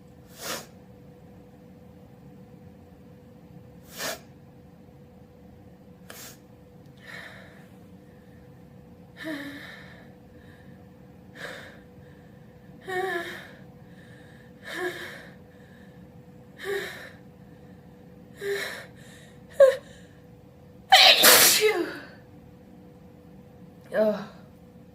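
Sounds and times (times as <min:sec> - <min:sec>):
person gasping before sneeze: 0:20.9 - 0:22.0.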